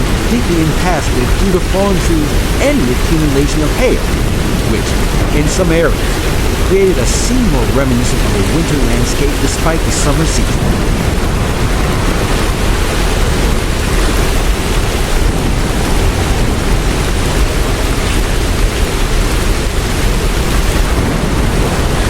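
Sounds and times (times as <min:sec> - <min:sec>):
hail falling: 0:00.0 - 0:22.0.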